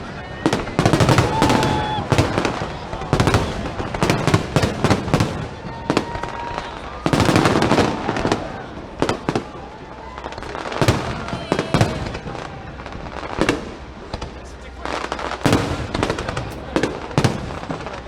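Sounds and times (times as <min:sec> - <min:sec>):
firework whistle: 0:00.0 - 0:12.4
firework crackling: 0:00.0 - 0:18.0
fireworks bangs and cracks: 0:00.0 - 0:18.0.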